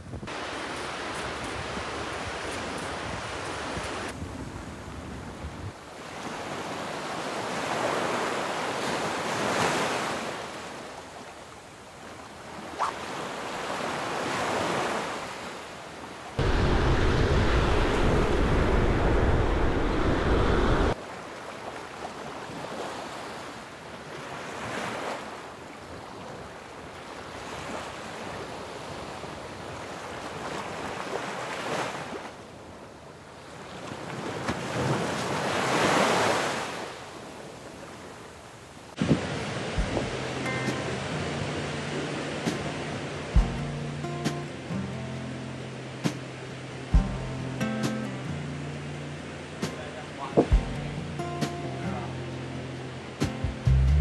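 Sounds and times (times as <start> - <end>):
wind on the microphone: 0.0 - 0.4, 16.4 - 21.0, 39.0 - 40.2
surf breaking on a beach: 0.0 - 43.4, 49.6 - 50.6.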